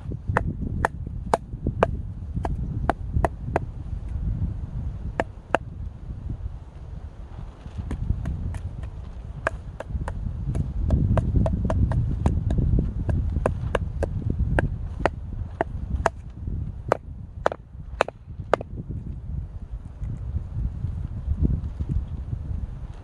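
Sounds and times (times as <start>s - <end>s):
low rumble: 0.0s - 23.0s
firewood being chopped: 0.3s - 3.7s, 5.1s - 5.7s, 7.6s - 18.8s.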